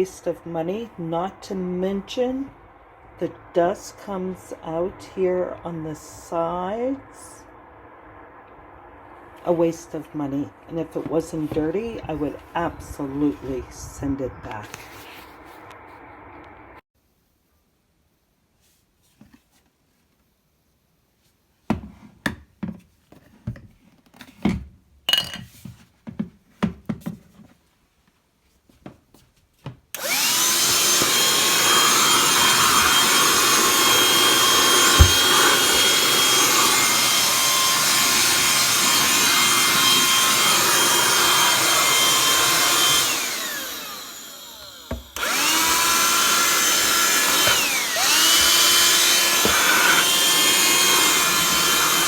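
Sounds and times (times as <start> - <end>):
handheld vacuum motor whining: 30.0 - 52.0.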